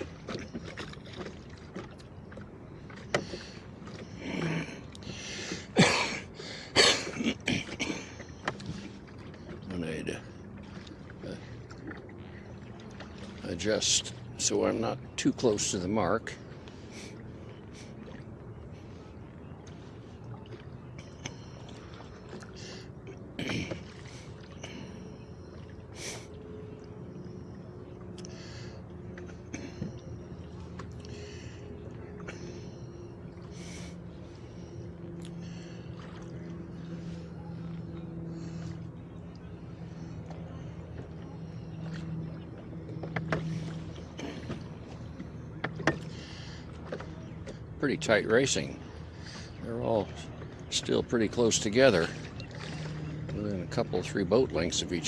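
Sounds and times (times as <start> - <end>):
oars splashing in water: 0.0 - 55.0.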